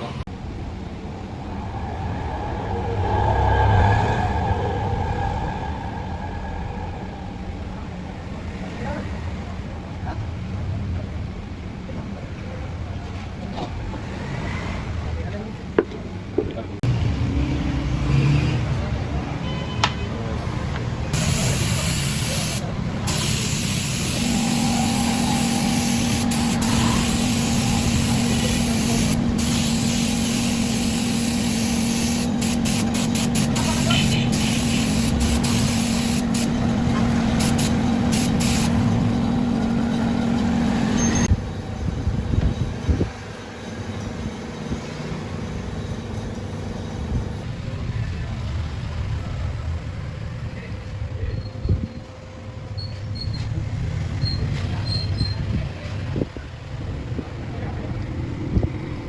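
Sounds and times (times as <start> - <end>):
machine hum: 21.1 - 42.0
compressed air hissing: 21.2 - 40.4.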